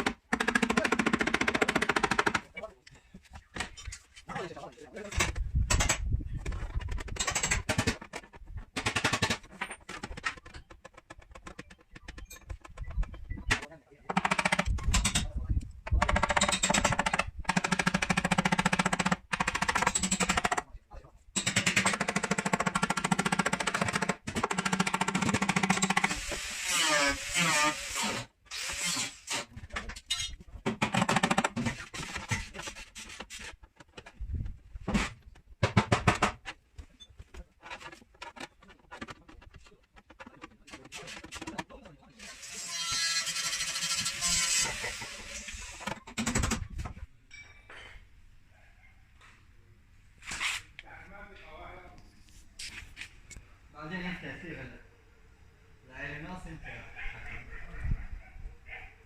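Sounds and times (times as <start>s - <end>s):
metal taps and scrapes on sheet metal: 29.5s - 42.1s.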